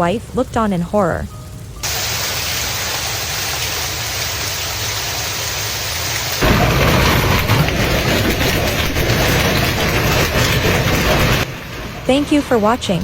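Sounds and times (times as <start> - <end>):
heavy rain downpour: 0.0 - 13.0
dense crackling: 6.1 - 13.0
low rumble: 6.4 - 13.0.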